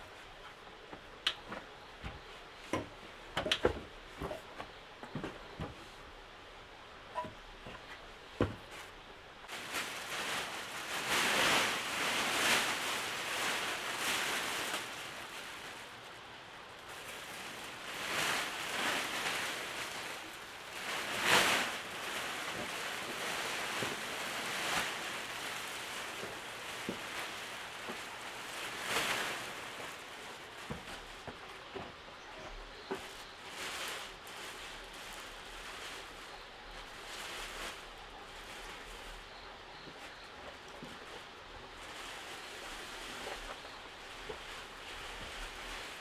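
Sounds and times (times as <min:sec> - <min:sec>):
rain: 0:09.4 - 0:30.5.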